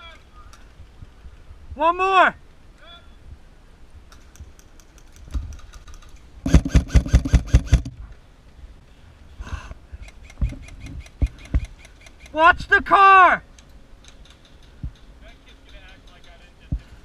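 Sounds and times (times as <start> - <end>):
airsoft rifle full-auto burst: 6.4 - 7.9.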